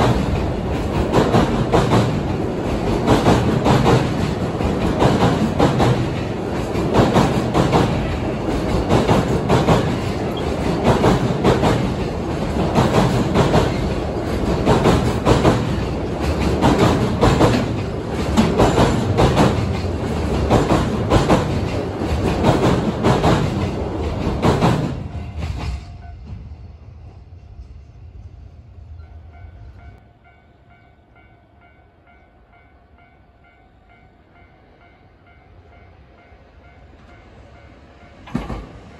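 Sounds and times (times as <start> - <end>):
train wheels clattering: 0.0 - 26.6, 38.1 - 38.9.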